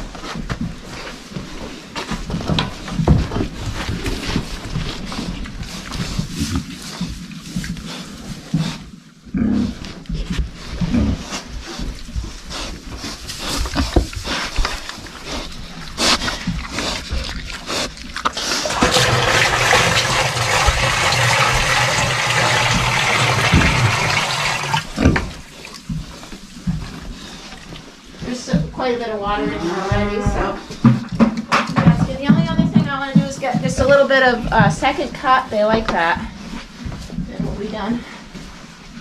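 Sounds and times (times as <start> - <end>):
pigs grunting and snuffling: 0.0 - 39.0
water rushing into waterer: 18.4 - 25.7.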